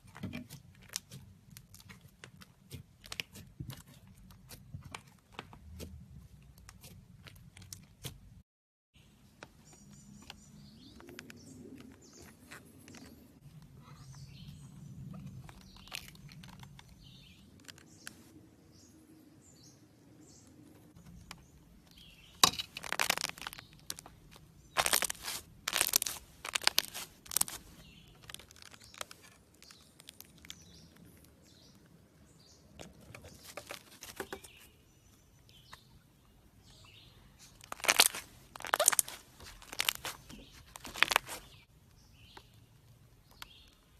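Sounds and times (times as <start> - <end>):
slime crackling pops: 37.7 - 40.1.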